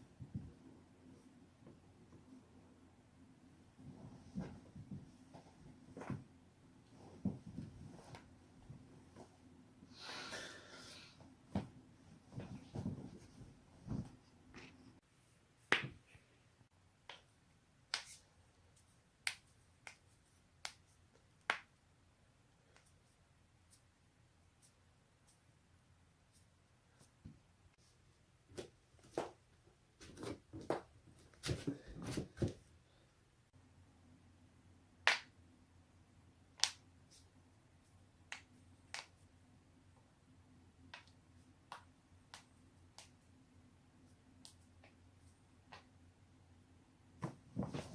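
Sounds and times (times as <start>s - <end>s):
faint steady hum: 0.0s - 30.1s.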